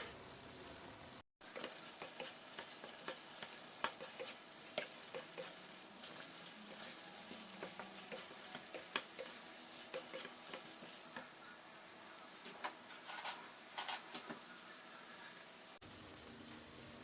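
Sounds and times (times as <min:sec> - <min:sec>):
food sizzling in a pan: 0:00.0 - 0:17.0
utensil scraping a pan: 0:01.5 - 0:11.1
utensil tapping a pan: 0:01.5 - 0:11.3.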